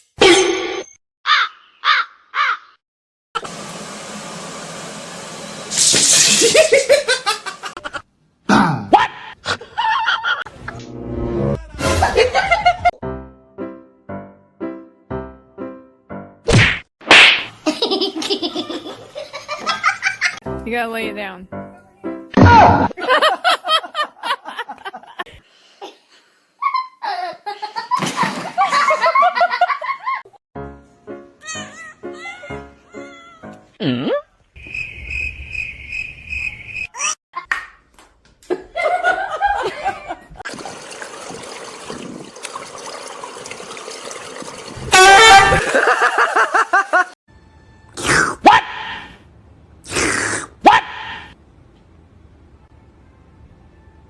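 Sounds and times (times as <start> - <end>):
hearty human laughter: 23.0 - 26.0, 38.5 - 40.4, 45.5 - 47.2.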